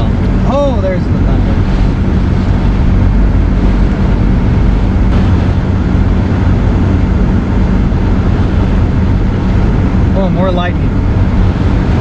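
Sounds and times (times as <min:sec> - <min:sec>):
strong wind on microphone: 0:00.0 - 0:12.0.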